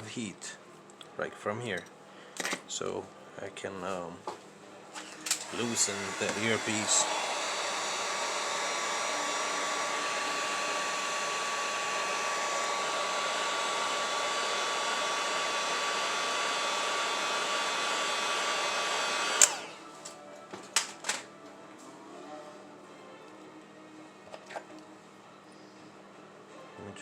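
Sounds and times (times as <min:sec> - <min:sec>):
hot-air blower rushing and whining: 0:05.0 - 0:19.9
blower switch click: 0:19.4 - 0:19.6.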